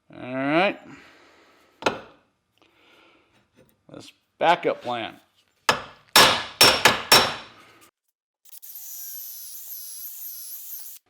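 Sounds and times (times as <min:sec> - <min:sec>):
hammer striking steel: 0:05.7 - 0:07.5
power tool high whine: 0:08.5 - 0:11.0.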